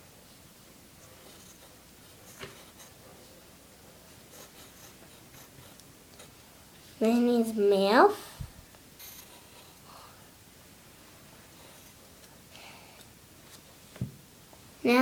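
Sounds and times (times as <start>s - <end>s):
drawing tool scratching paper: 4.3s - 5.8s.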